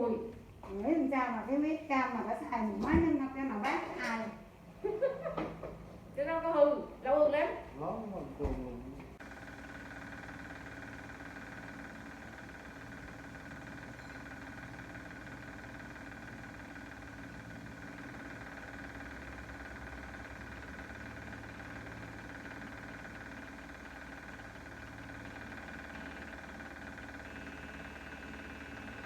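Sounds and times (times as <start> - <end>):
steady mechanical hum: 0.0 - 29.0.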